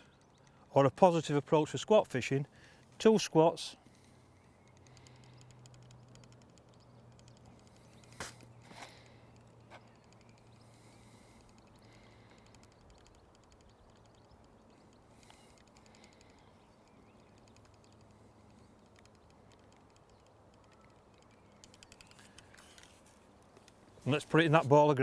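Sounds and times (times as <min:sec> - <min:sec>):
rapid high-pitched ticking: 0:04.4 - 0:08.2, 0:11.4 - 0:22.5.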